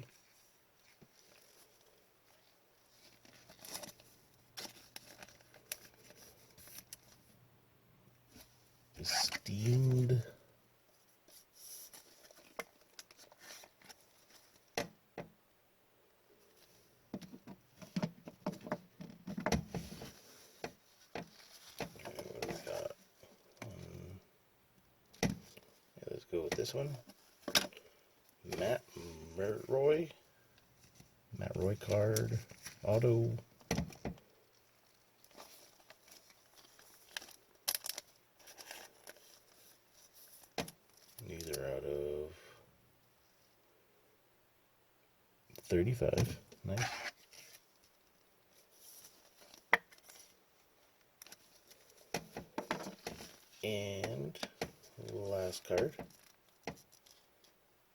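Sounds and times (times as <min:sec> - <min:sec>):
cards rustling: 0:00.0 - 0:07.2, 0:08.4 - 0:10.2, 0:11.3 - 0:14.8, 0:17.8 - 0:24.1, 0:30.8 - 0:41.8, 0:45.6 - 0:50.4, 0:51.0 - 0:57.5.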